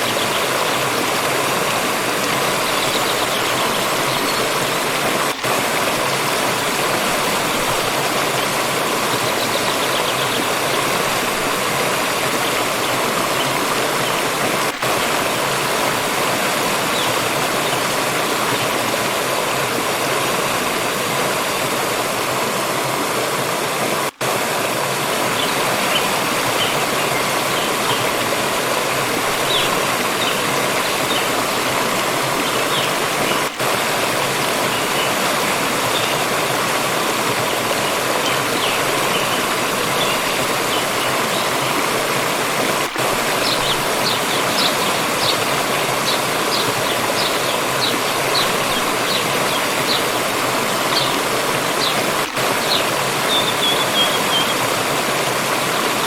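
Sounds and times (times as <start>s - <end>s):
water rushing over rocks: 0.0s - 56.0s.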